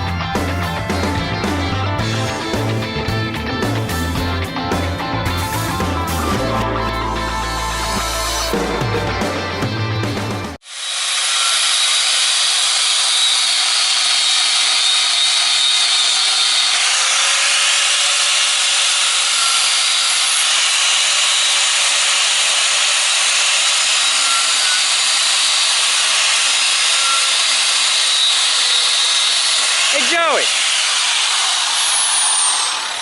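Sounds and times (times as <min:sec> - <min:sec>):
power grinder grinding metal: 0:10.6 - 0:33.0.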